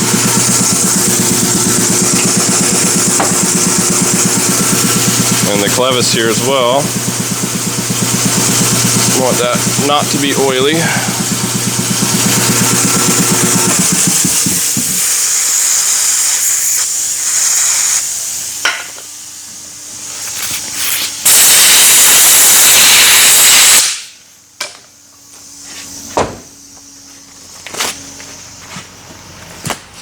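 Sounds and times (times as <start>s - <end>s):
aerosol spray hissing: 0.4s - 18.0s.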